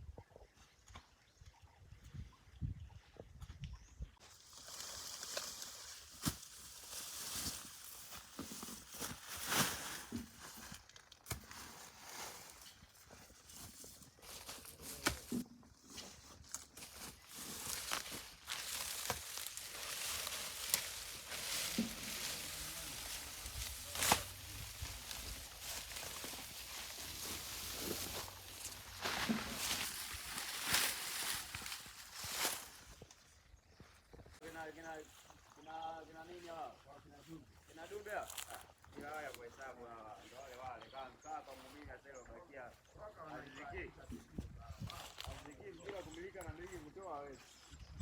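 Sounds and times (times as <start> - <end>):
dry plants rustling and crackling: 4.2 - 41.9, 42.8 - 48.0
footsteps: 7.4 - 32.7
sharp snaps and crunches: 16.5 - 27.0.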